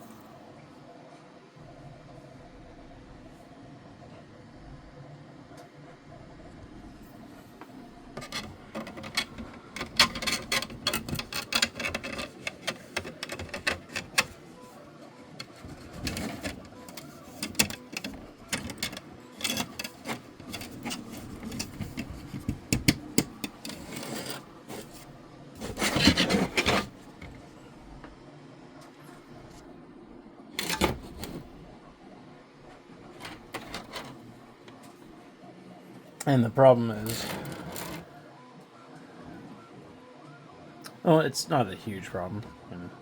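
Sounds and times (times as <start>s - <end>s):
plastic scraping: 8.1s - 27.5s, 33.1s - 34.3s
hard plastic clicking and knocking: 8.2s - 14.4s, 15.4s - 23.9s.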